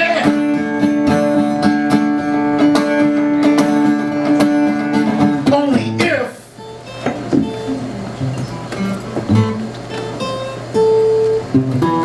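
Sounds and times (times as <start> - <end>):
guitar strummed in steady rhythm: 0.0 - 12.0.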